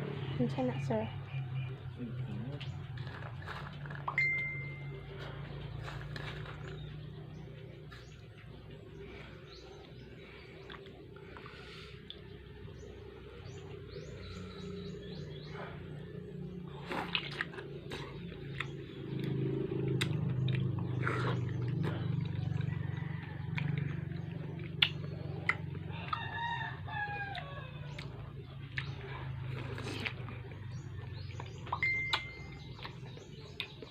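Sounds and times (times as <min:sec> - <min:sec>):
steady low hum: 0:00.0 - 0:33.9
rooster crowing: 0:25.9 - 0:27.9.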